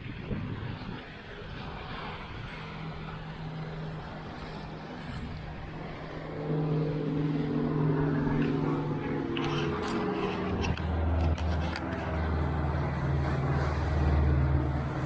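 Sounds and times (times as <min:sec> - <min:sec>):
noisy background: 0:00.0 - 0:15.0
vehicle engine humming: 0:01.0 - 0:15.0.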